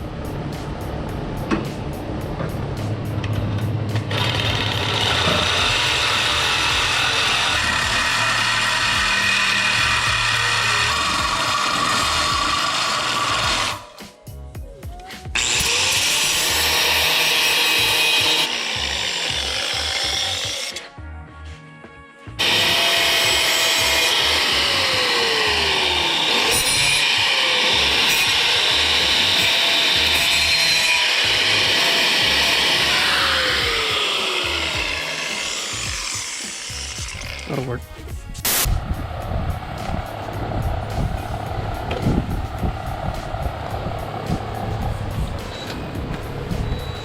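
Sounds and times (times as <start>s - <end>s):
handheld power tool running: 4.1s - 14.0s, 15.3s - 20.9s, 22.4s - 37.5s.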